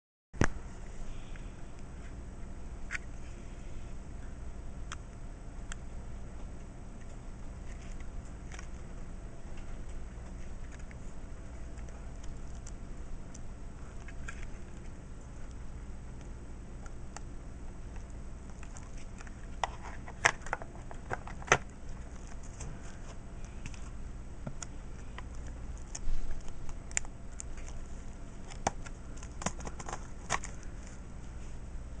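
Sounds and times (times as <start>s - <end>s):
low hum: 0.4s - 32.0s.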